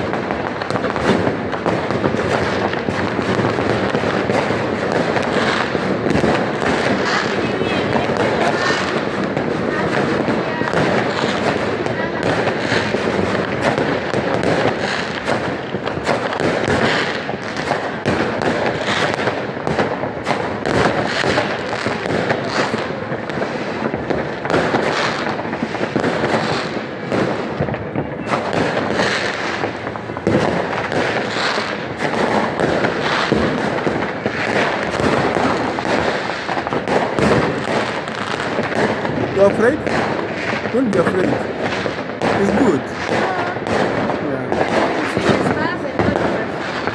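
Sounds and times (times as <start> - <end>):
fireworks bangs and crackling: 0.0 - 46.9.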